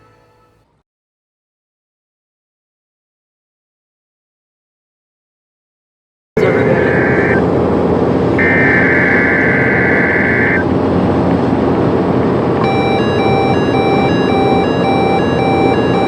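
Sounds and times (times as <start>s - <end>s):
screeching data bursts: 6.4s - 7.4s, 8.4s - 10.6s, 12.6s - 16.0s
on-off beeping tone: 8.4s - 10.6s, 12.6s - 16.0s.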